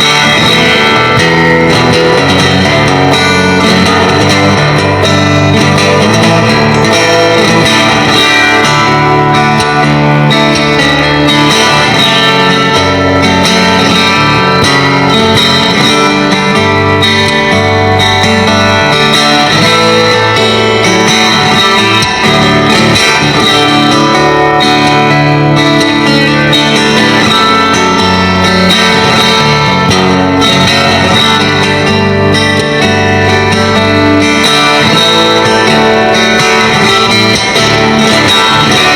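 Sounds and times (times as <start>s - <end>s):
fingerstyle guitar piece: 0.0s - 38.9s.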